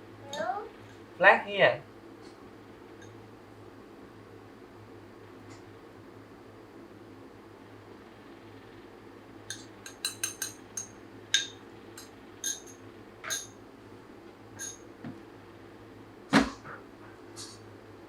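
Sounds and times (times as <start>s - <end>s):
steady low hum: 0.0s - 18.0s
cutlery clinking against dish: 9.5s - 13.5s, 14.6s - 14.8s.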